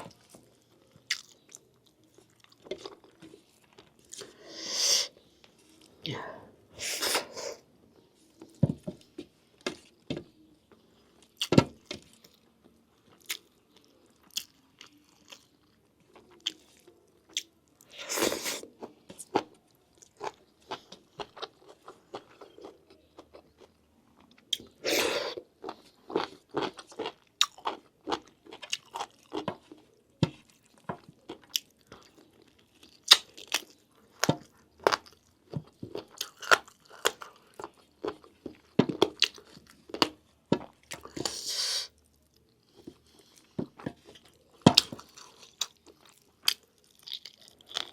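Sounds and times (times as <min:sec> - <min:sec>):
wet chewing and biting: 0:24.3 - 0:41.4.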